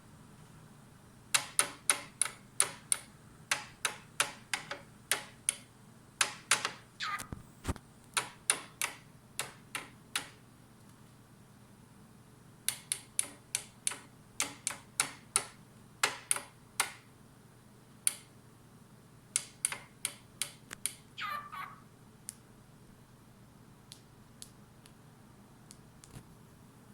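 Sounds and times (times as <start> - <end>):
beak tapping on mirror: 1.3 - 7.2, 8.1 - 10.4, 12.7 - 17.0.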